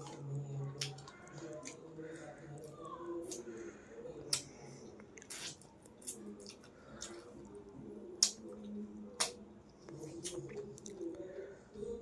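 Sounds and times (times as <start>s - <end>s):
lip smacks and clicks: 4.2s - 7.3s, 8.2s - 11.1s
wet squishy chewing: 4.2s - 11.2s.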